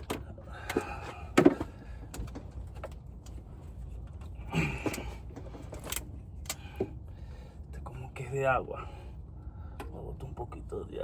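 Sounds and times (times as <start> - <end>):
clicks and knocks of engine parts: 0.0 - 7.2
steady low hum: 0.0 - 11.0.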